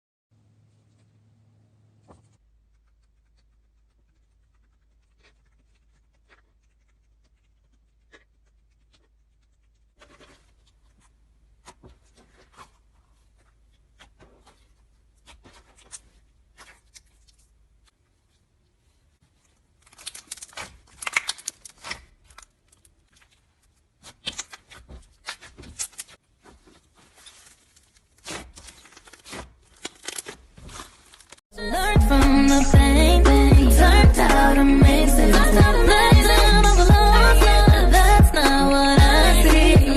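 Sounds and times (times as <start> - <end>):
slime crackling and popping: 19.8 - 26.2.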